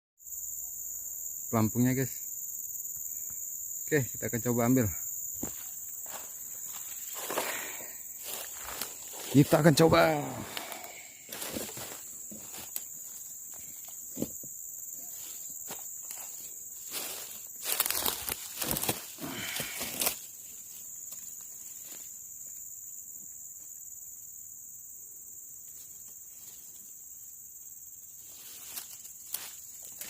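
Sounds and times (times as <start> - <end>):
insects chirring: 0.2 - 30.0
rustling through vegetation: 5.4 - 22.3, 28.1 - 30.0.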